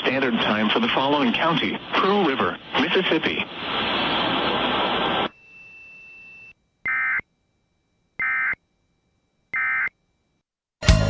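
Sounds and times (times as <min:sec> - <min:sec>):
faint hiss with steady tone: 0:00.0 - 0:10.4.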